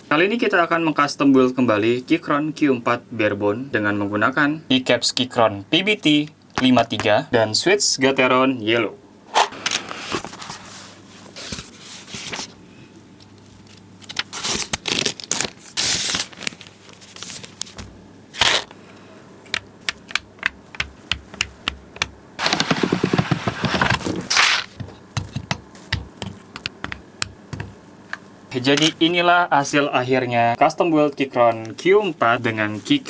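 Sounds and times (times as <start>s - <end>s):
scraping and rustling: 9.4s - 12.6s, 22.4s - 26.9s.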